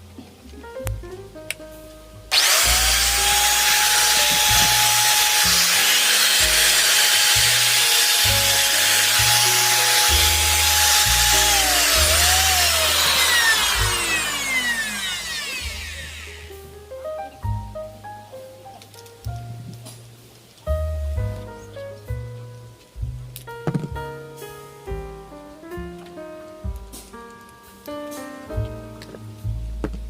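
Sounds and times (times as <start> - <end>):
angle grinder whining: 2.3 - 16.5.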